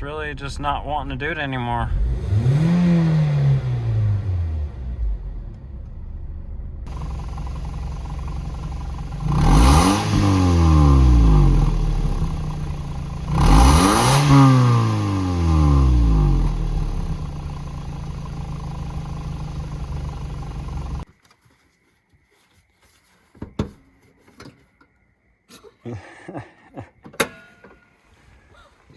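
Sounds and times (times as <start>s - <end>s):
car engine idling and revving: 0.0s - 21.1s.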